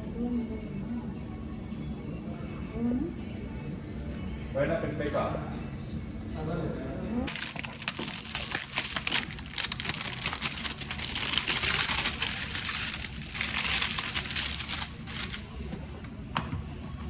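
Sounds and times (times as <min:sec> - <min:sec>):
plastic packaging crinkling: 0:07.3 - 0:15.6.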